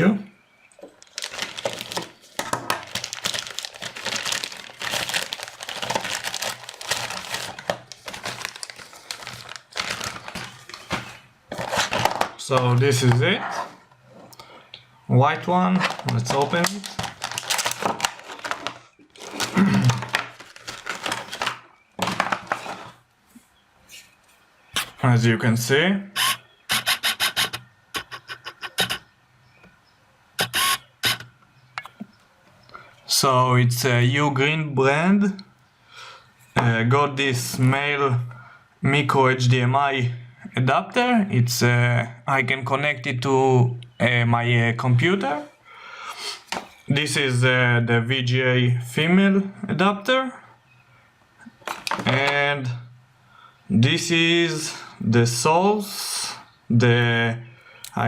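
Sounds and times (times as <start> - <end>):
packaging crinkling: 0.9 - 12.4, 15.7 - 23.0.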